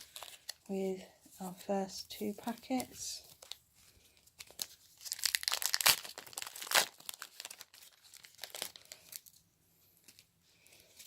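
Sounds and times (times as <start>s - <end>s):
foil wrappers crinkling: 0.0s - 0.7s, 1.4s - 9.4s.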